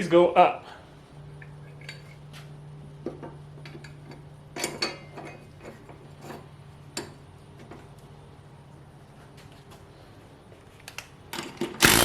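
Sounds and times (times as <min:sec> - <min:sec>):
metal clinks and knocks: 0:03.0 - 0:07.8.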